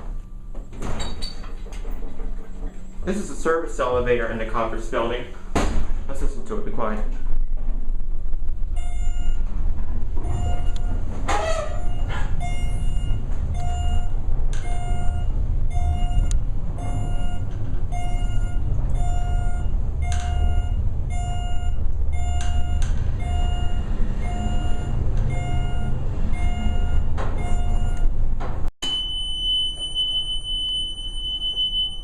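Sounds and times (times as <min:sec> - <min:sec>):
elevator car rumbling: 0:00.0 - 0:32.0
repeating beep: 0:11.8 - 0:28.1.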